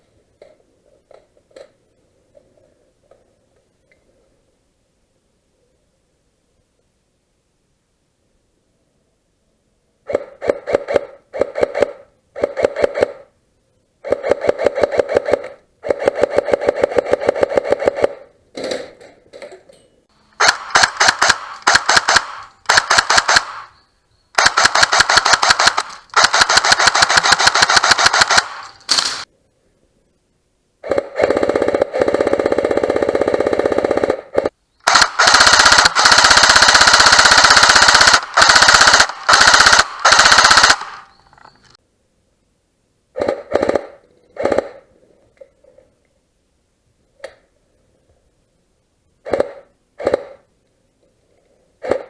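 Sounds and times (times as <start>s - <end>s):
airsoft gun firing bursts: 10.1s - 13.3s, 14.0s - 18.3s, 20.4s - 23.7s, 24.4s - 29.3s, 30.8s - 41.1s, 43.2s - 44.8s, 49.2s - 50.5s.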